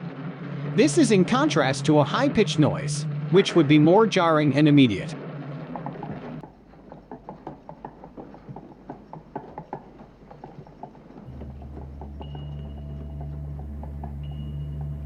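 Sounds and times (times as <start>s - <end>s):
low steady hum: 0.0s - 15.0s
tricycle wheels clattering: 5.5s - 15.0s.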